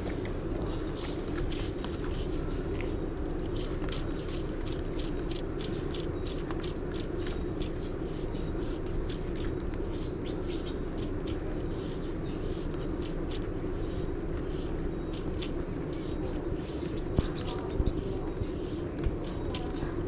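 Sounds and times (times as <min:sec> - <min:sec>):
outdoor background rumble: 0:00.0 - 0:20.0
high bird chirps: 0:03.4 - 0:15.3.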